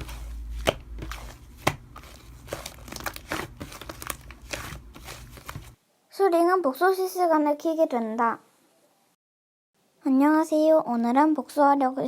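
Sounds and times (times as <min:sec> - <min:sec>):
rustling: 0:00.0 - 0:05.8.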